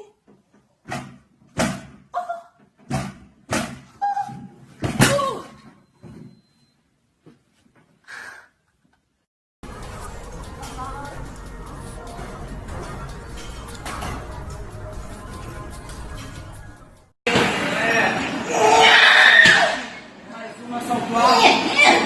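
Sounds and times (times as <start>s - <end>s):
music: 9.6s - 17.2s.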